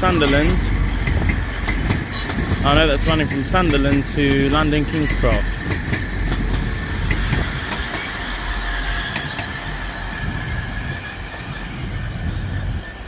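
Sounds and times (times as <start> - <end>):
high steady squeal: 0.0 - 3.4, 7.0 - 13.0
train wheels rumbling on rail: 0.0 - 13.0.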